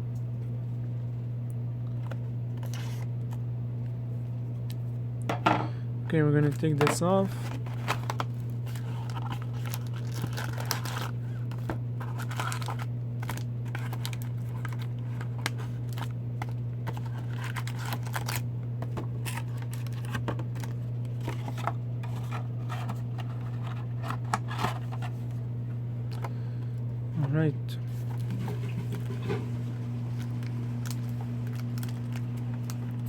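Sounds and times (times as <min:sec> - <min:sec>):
steady low hum: 0:00.0 - 0:33.0
plastic shrink wrap tearing: 0:06.4 - 0:25.0, 0:30.1 - 0:33.0.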